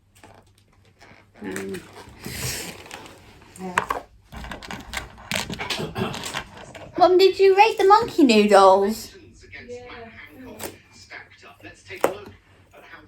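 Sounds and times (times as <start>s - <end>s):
clicks and rustles of handling: 0.0s - 7.0s.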